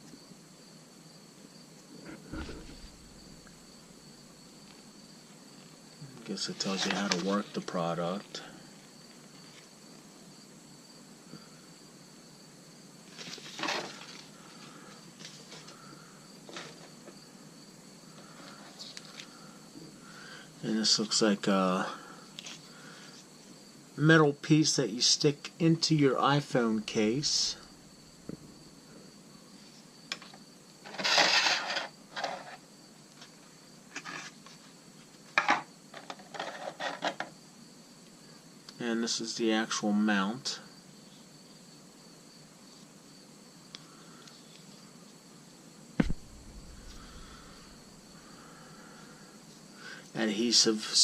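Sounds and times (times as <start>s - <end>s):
rustling scrape: 2.0s - 4.0s, 6.5s - 7.6s, 13.1s - 14.3s, 30.8s - 32.6s.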